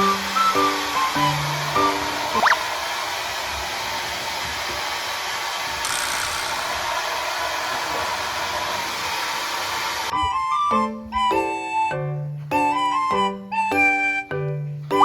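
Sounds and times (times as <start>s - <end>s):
short rising whistle: 0.0s - 2.6s
hair dryer blowing: 0.0s - 10.1s.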